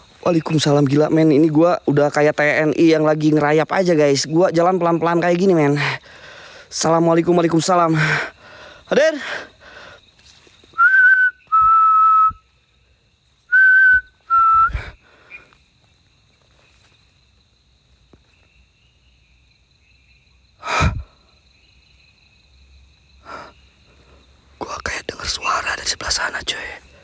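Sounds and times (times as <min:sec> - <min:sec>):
faint insect trill: 0:00.0 - 0:27.0
person whistling notes: 0:10.8 - 0:12.4, 0:13.5 - 0:14.9
breathy burst: 0:20.6 - 0:21.3.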